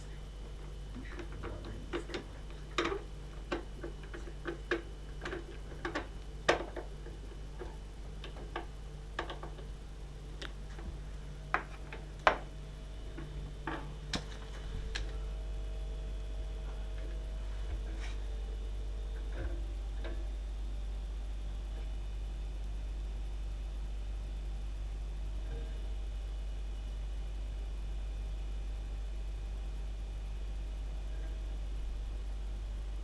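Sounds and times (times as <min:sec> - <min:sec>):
steady low hum: 0:00.0 - 0:33.0
small parts and tools clicking: 0:01.2 - 0:09.7.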